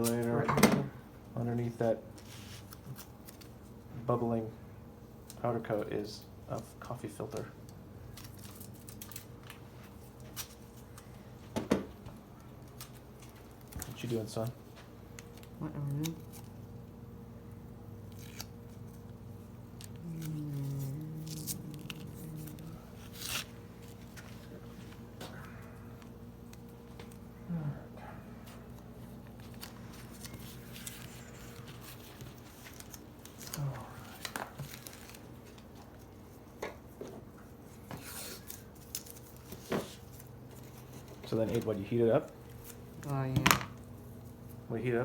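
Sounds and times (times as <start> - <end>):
steady low hum: 0.0 - 45.0
tape being handled: 2.1 - 3.8, 7.6 - 11.2, 12.4 - 17.0, 18.0 - 25.0, 28.6 - 37.1, 37.8 - 44.4
person humming or murmuring: 19.9 - 23.2, 33.5 - 34.2.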